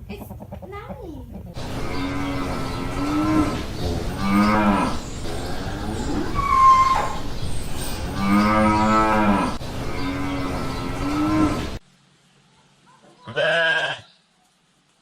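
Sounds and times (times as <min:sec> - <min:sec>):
outdoor background noise: 0:00.0 - 0:15.0
pitched animal call: 0:01.6 - 0:07.4
cow mooing: 0:01.8 - 0:07.2, 0:08.1 - 0:11.8.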